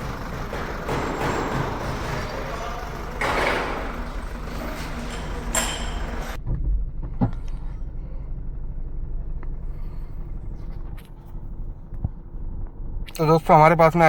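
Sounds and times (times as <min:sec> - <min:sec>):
diesel engine idling: 0:00.0 - 0:06.4
man talking: 0:13.2 - 0:14.0.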